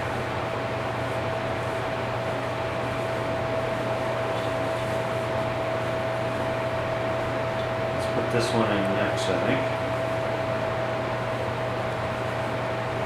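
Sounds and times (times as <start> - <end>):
machine hum and hiss: 0.0 - 13.0.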